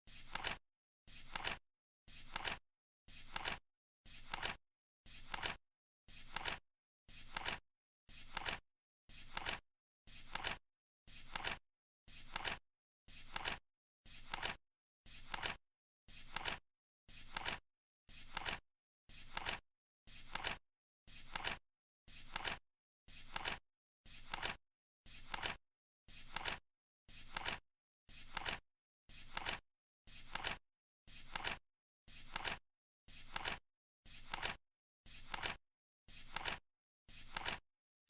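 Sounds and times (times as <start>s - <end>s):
flip clock card flapping: 0.2s - 0.6s, 1.3s - 1.6s, 2.3s - 2.6s, 3.3s - 3.6s, 4.2s - 4.6s, 6.3s - 6.6s, 7.3s - 7.6s, 8.3s - 8.6s, 9.3s - 9.6s, 10.3s - 10.6s, 14.3s - 14.6s, 17.3s - 17.6s, 18.3s - 18.6s, 19.3s - 19.6s, 24.2s - 24.6s, 25.3s - 25.6s, 26.3s - 26.6s, 27.3s - 27.6s, 28.3s - 28.6s, 29.3s - 29.6s, 30.3s - 30.6s, 31.3s - 31.6s, 32.3s - 32.6s, 33.3s - 33.6s, 34.2s - 34.6s, 35.3s - 35.6s, 36.3s - 36.6s, 37.3s - 37.6s.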